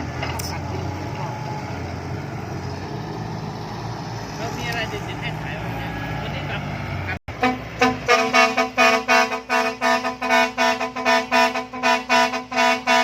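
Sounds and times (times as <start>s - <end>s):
vehicle horn blasts: 7.3s - 13.0s.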